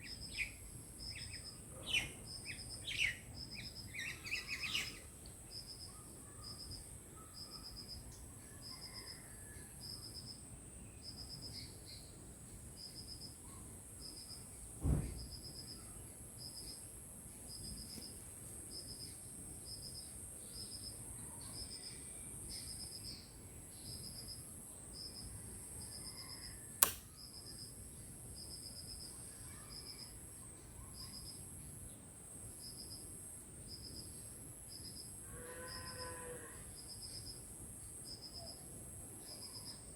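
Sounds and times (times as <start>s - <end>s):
insects chirping in pulses: 0.0s - 6.8s
dull thump: 14.8s - 15.3s
sharp click: 26.8s - 27.2s.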